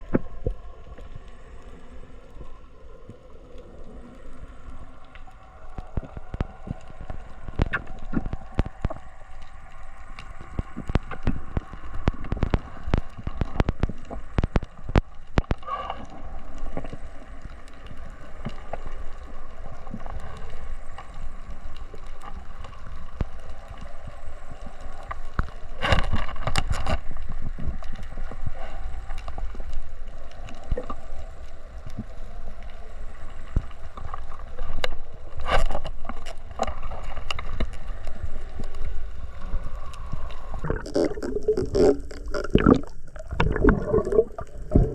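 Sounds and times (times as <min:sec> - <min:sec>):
water gurgling and sloshing: 0:00.0 - 0:44.9.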